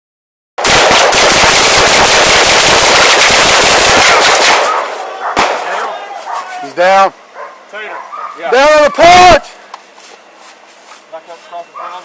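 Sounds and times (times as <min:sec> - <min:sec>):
rapid gunfire: 0:00.6 - 0:05.8.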